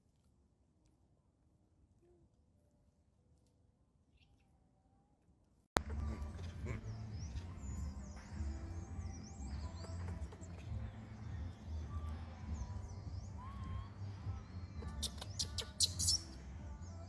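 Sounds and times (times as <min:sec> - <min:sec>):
high gliding chirping calls: 0:12.8 - 0:16.4
sharp squeaks and clicks: 0:14.8 - 0:16.4.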